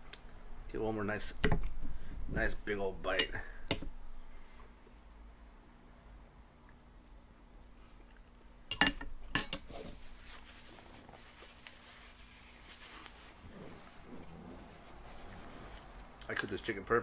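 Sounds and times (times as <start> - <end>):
cutlery clinking against a plate: 8.7 - 9.7
faint eating sounds: 9.7 - 16.4.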